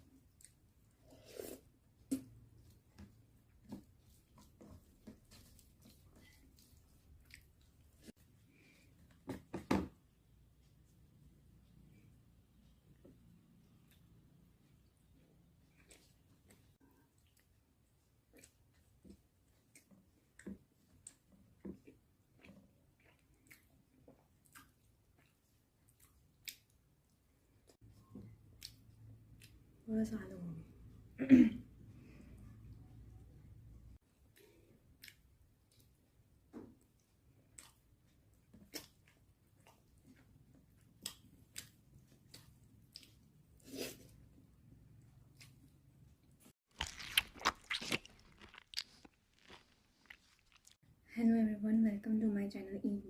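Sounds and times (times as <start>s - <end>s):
chewing and mouth clicks: 5.3s - 8.0s, 15.7s - 26.8s, 34.3s - 36.1s, 36.8s - 43.4s, 46.7s - 50.8s.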